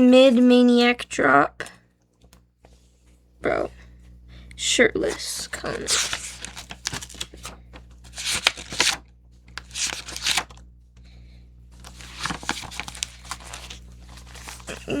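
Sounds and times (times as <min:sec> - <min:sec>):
paper rustling and shuffling: 0:05.0 - 0:10.7, 0:11.7 - 0:15.0.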